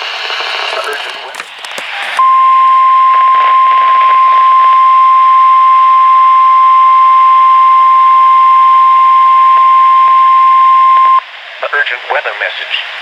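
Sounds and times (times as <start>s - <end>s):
radio hiss: 0.0s - 2.2s, 11.4s - 13.0s.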